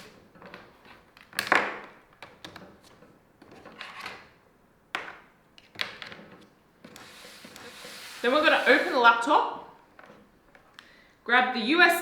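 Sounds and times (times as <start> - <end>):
soft rubbing: 7.0 - 9.3.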